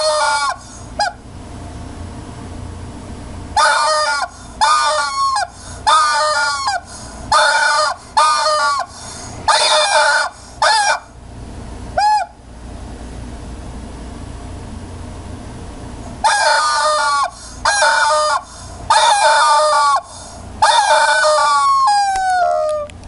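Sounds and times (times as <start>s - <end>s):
fowl honking calls: 0.0s - 1.2s, 3.6s - 11.1s, 16.2s - 22.9s.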